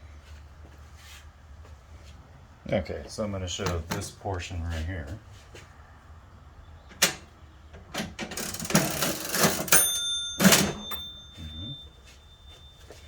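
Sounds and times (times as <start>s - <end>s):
cash drawer clunk: 7.0s - 7.3s, 7.9s - 11.8s
cash register mechanism clattering: 7.0s - 11.9s
cash register bell ringing: 8.1s - 13.0s.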